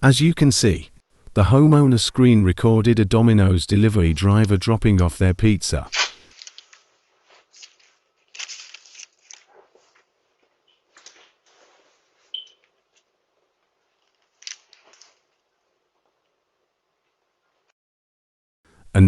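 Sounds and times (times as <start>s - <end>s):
rustling and scuffing: 6.0s - 13.0s.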